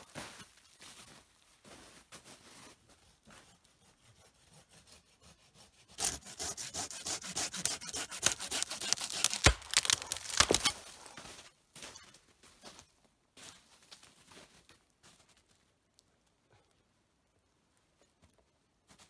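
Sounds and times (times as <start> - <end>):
ferro rod scraping: 3.2 - 11.1.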